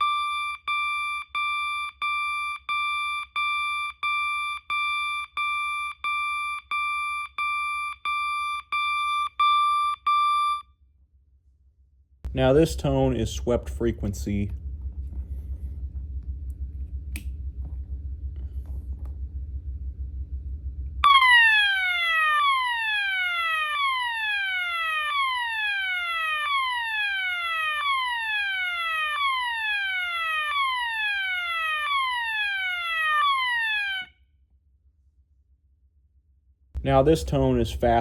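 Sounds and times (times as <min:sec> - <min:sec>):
fire alarm horn sweeping tone: 0:00.0 - 0:10.6, 0:21.0 - 0:34.2
low hum: 0:12.3 - 0:34.1
click: 0:17.1 - 0:17.3.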